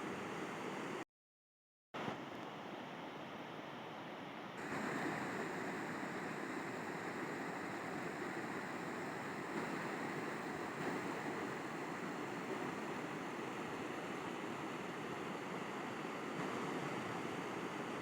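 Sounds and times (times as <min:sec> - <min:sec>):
river water rushing: 0:04.6 - 0:18.0.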